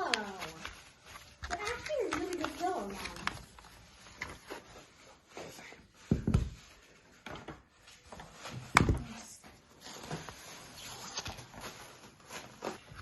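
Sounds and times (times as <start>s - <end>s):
packaging rubbing and tapping: 0.0s - 4.9s.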